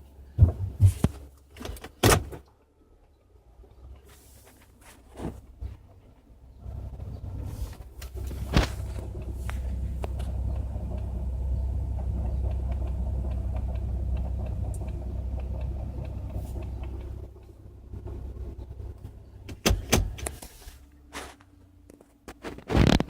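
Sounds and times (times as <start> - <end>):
car engine rumbling: 0.0 - 23.0
light regular clicking: 12.3 - 17.4.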